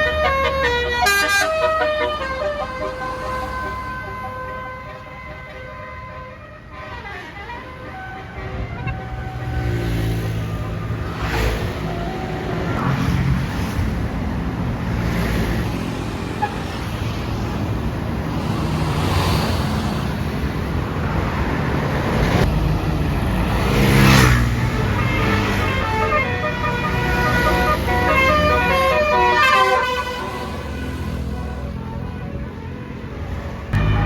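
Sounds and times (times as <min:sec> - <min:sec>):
bus horn playing a tune: 0:00.0 - 0:13.0, 0:24.0 - 0:34.0
bus engine: 0:00.0 - 0:34.0
traffic noise: 0:00.0 - 0:34.0.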